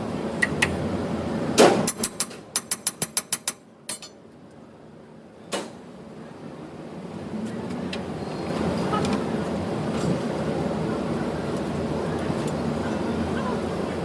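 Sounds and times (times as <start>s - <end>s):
rapid sharp mechanical clicks: 1.8s - 3.6s.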